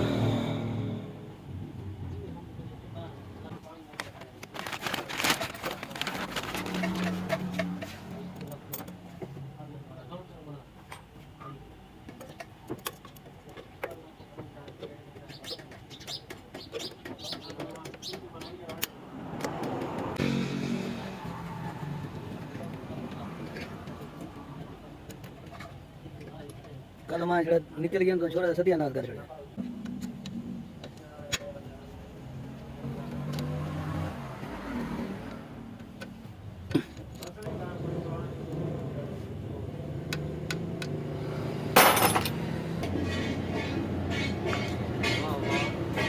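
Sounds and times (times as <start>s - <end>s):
birds chirping: 15.2s - 18.7s.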